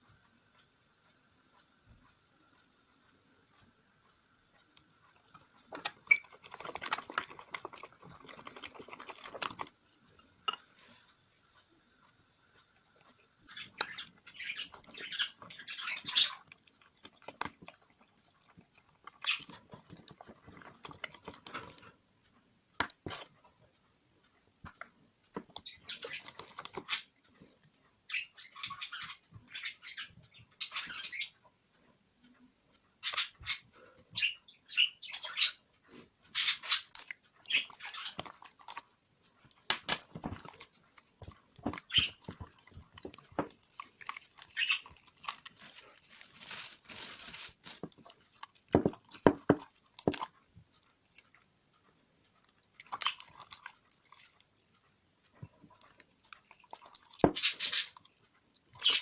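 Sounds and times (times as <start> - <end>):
slime squishing by hand: 5.7 - 11.1, 39.5 - 51.3.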